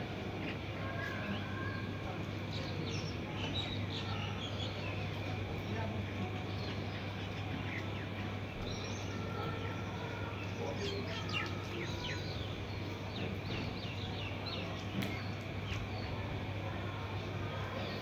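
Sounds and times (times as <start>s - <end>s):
small birds chirping: 6.4s - 16.2s.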